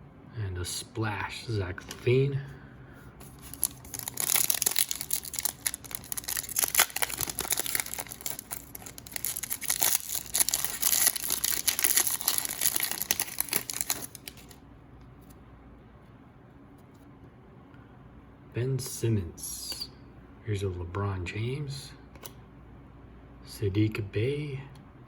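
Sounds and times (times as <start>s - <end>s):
plastic wrapper tearing and crinkling: 3.2s - 14.6s.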